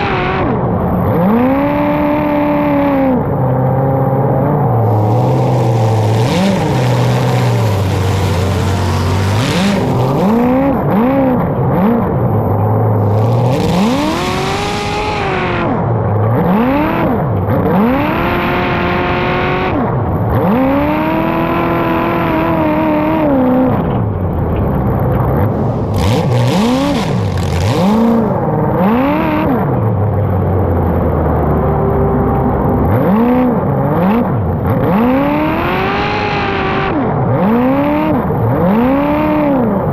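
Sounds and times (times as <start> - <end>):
racing engines revving: 0.0 - 39.9
steady low drone: 3.1 - 17.5, 23.6 - 34.7.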